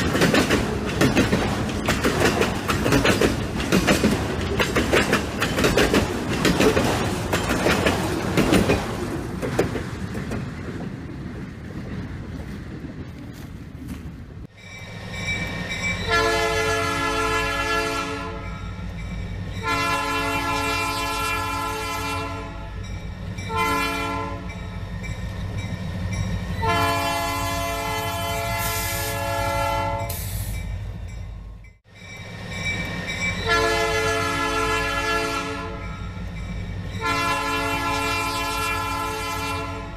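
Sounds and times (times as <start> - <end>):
passing train rumble: 0.0 - 39.9
locomotive air horn: 16.0 - 18.6, 19.6 - 22.8, 23.5 - 24.6, 26.6 - 30.5, 33.4 - 36.0, 37.0 - 39.9.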